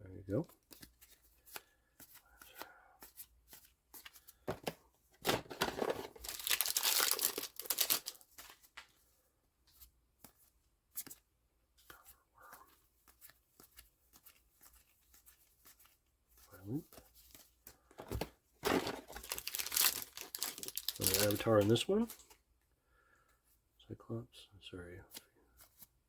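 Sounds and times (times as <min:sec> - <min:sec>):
cards clicking and rustling: 0:00.5 - 0:09.0, 0:11.8 - 0:22.4
wrapper tearing and crinkling: 0:05.4 - 0:08.2, 0:18.7 - 0:21.8.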